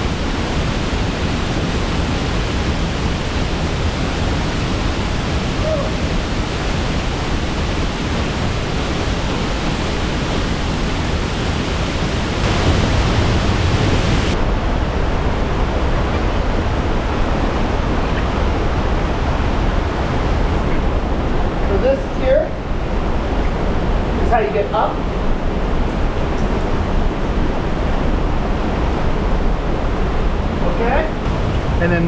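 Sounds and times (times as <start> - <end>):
waterfall roaring: 0.0 - 32.0.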